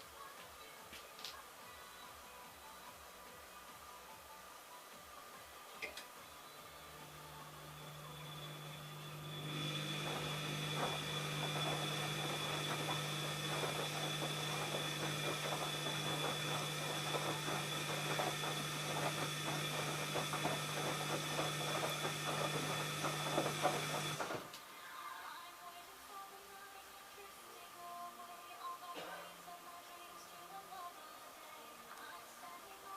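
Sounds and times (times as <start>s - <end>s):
washing machine running: 6.8s - 24.5s.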